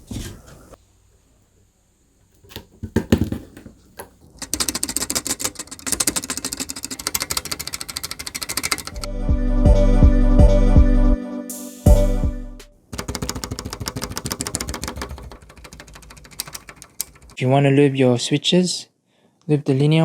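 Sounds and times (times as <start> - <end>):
keyboard keys clacking: 4.4 - 9.1, 13.0 - 17.4
background music with bass beat: 9.0 - 12.8.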